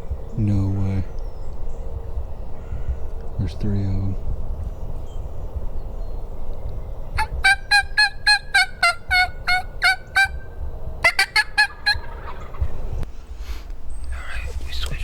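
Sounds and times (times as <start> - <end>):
turkey yelps: 7.2 - 12.8.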